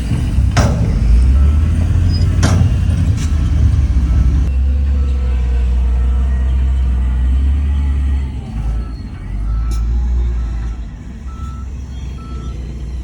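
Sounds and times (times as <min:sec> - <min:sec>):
metallic clanks: 0:00.0 - 0:05.0
diesel engine droning: 0:00.0 - 0:13.0.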